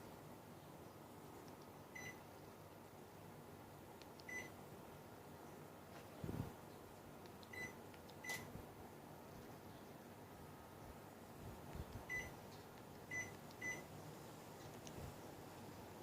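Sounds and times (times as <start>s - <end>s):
faint steady hum: 0.0s - 16.0s
air conditioner short high beeps: 1.9s - 2.2s, 4.2s - 4.6s, 7.5s - 8.5s, 12.0s - 12.4s, 13.1s - 13.9s.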